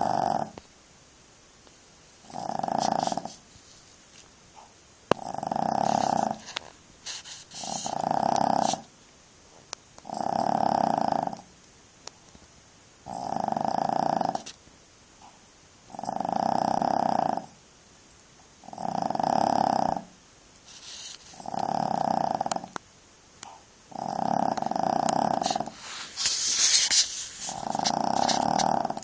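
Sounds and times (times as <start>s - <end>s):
puppy snoring: 0.0s - 0.7s, 2.2s - 3.8s, 4.5s - 8.9s, 9.5s - 11.6s, 13.0s - 14.6s, 15.2s - 17.6s, 18.6s - 22.8s, 23.4s - 29.0s.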